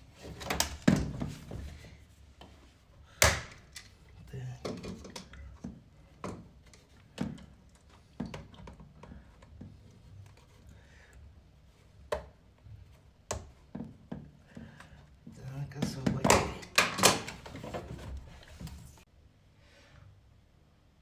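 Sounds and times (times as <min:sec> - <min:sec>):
clicks and knocks on plastic pump: 0:04.6 - 0:10.6, 0:15.8 - 0:18.9.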